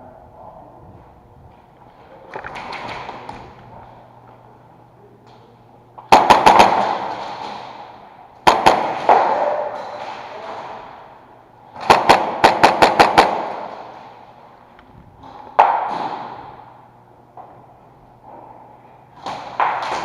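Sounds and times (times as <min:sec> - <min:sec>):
airsoft guns firing in volleys: 0:02.3 - 0:04.0, 0:06.0 - 0:14.6, 0:15.2 - 0:17.6, 0:19.2 - 0:20.0.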